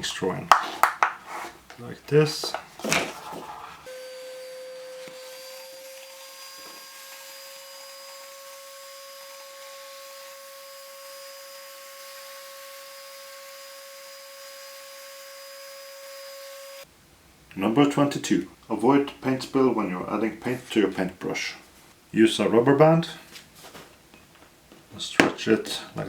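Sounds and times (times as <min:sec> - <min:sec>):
vacuum cleaner whine: 0:03.9 - 0:11.5, 0:12.1 - 0:16.8.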